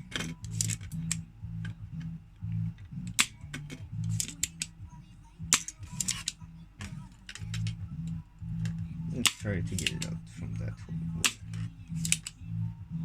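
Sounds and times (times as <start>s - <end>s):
background music with low beat: 0.0s - 13.0s
sharp clicks and snaps: 11.2s - 12.4s.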